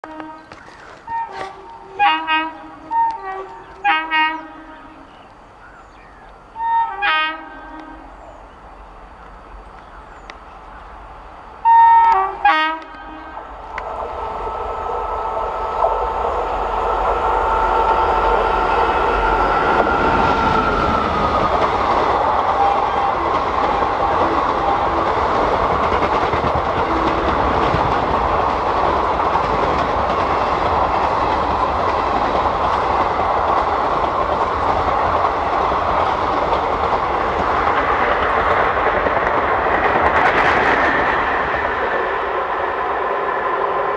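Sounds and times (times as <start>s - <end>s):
train horn blasts: 0.0s - 5.1s, 6.6s - 8.2s, 11.6s - 13.6s
train rumble and wheel clatter: 0.0s - 43.9s.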